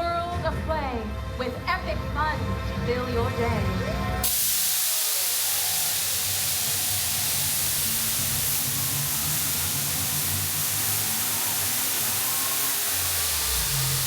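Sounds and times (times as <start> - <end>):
loud steady hiss: 4.2 - 14.0.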